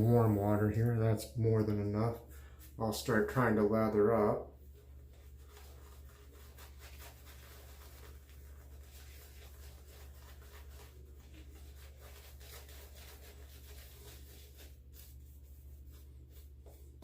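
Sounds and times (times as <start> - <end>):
low steady hum: 0.0 - 17.0
shaving brush swirling lather: 4.6 - 17.0.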